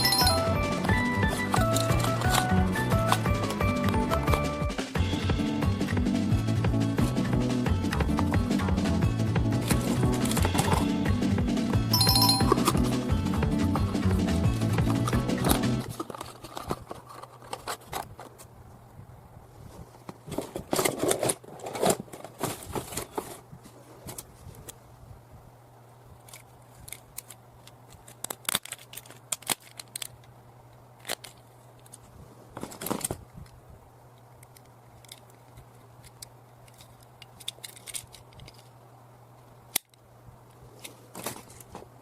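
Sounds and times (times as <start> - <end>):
plastic packaging clicks and crinkles: 14.9 - 18.5, 26.2 - 33.5, 34.3 - 38.8.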